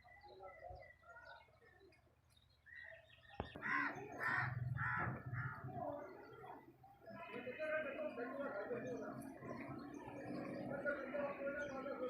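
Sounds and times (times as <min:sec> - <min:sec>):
small birds chirping: 0:00.0 - 0:12.0
crow cawing loudly: 0:03.6 - 0:05.6.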